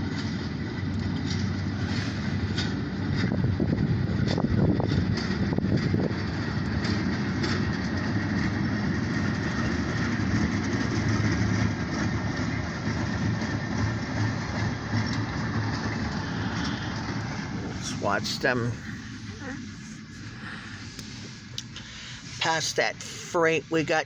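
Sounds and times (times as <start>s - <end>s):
locomotive engine running: 0.0s - 24.0s
rail noise: 0.0s - 24.0s.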